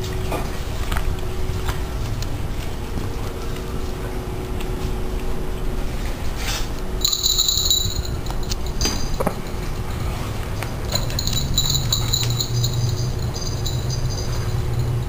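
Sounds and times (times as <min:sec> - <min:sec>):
steady low rumble: 0:00.0 - 0:15.0
metallic clinking and jingling: 0:07.0 - 0:15.0.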